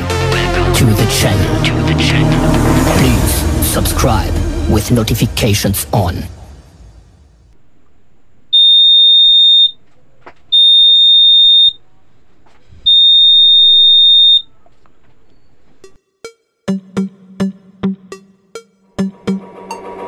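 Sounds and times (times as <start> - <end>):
high-pitched alarm buzzer beeps: 8.6 - 9.8, 10.6 - 11.8, 12.9 - 14.4.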